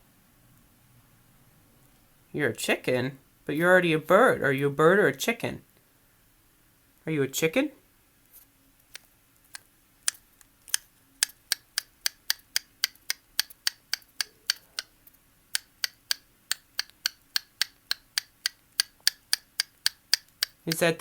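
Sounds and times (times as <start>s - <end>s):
cockatiel clicking: 8.8s - 21.0s.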